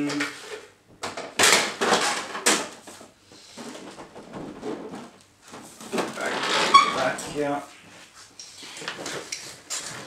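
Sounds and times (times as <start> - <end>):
plastic knocks and scrapes: 1.0 - 7.2.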